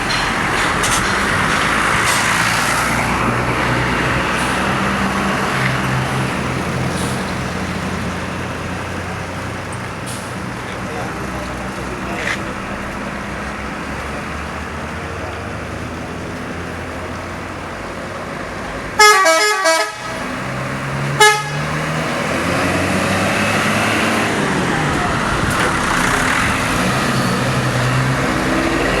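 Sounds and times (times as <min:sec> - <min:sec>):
road noise from engines: 0:00.0 - 0:29.0
bus horn playing notes: 0:19.0 - 0:20.4, 0:21.1 - 0:21.9.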